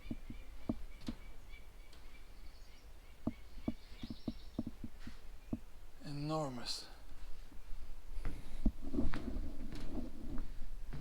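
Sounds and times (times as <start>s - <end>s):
faint bird chirps: 0.0s - 5.7s
soft knocks and taps: 3.2s - 5.7s.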